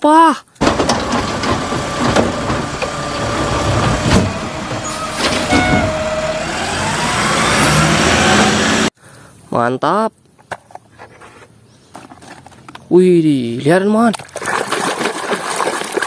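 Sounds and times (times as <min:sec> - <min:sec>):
knocks: 0:00.6 - 0:04.5
rising whine: 0:00.6 - 0:08.9
truck engine running: 0:00.6 - 0:08.9.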